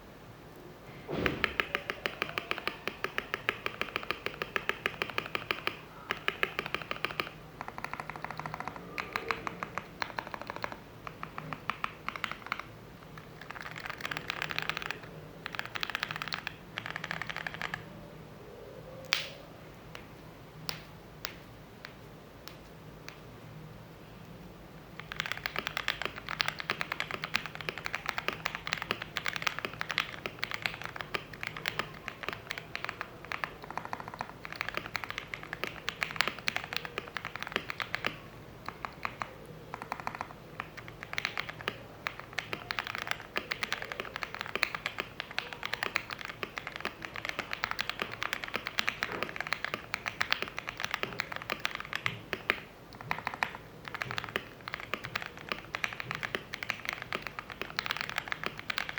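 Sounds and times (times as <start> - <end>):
mechanical keyboard typing: 1.2 - 17.9, 25.0 - 58.9.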